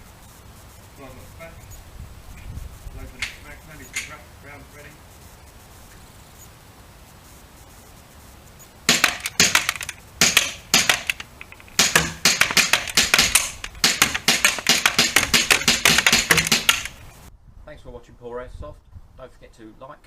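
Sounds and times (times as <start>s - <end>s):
airsoft pistol shots: 8.9s - 17.1s.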